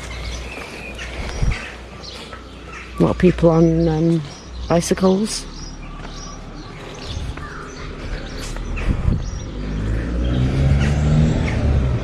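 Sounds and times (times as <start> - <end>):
small birds chirping: 0.0 - 12.0
car engine hum: 5.6 - 12.0.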